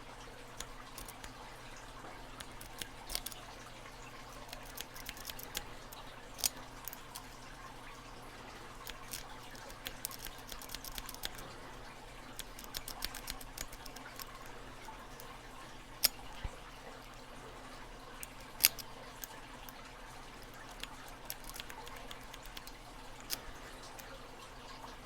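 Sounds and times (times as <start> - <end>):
metallic clicks of lock picking: 0.6 - 1.3, 2.4 - 3.5, 4.3 - 7.3, 8.8 - 11.4, 12.4 - 15.3, 16.0 - 16.2, 18.2 - 19.8, 20.4 - 24.1.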